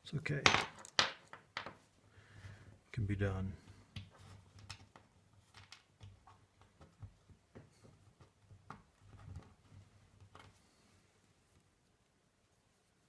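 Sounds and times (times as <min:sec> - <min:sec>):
faint clicks of small parts handled: 0:03.7 - 0:08.0.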